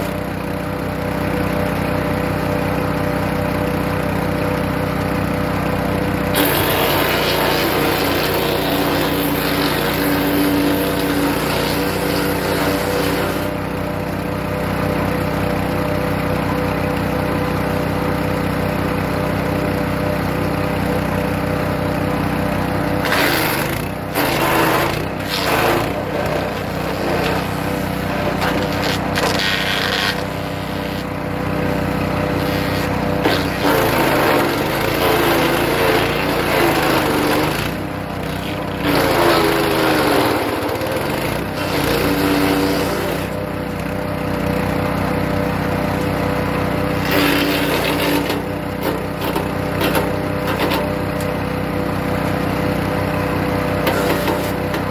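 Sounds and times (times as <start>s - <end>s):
wood chipper engine running: 0.0s - 54.9s
branches being shredded: 23.0s - 31.2s, 32.4s - 35.1s.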